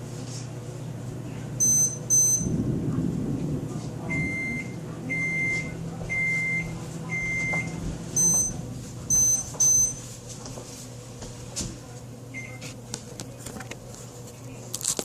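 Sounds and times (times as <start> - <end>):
low electrical hum: 0.0 - 15.0
short high-pitched beeps: 1.6 - 2.5, 4.2 - 10.0
steady mid-pitched beeps: 1.6 - 2.6, 4.1 - 10.1.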